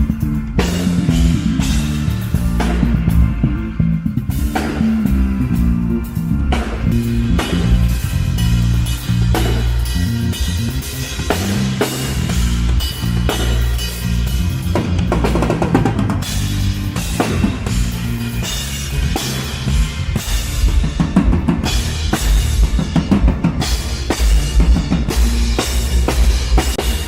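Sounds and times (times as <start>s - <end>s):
cymbals: 0.0s - 27.0s
live band playing: 0.0s - 27.0s
low bass notes: 0.0s - 27.0s.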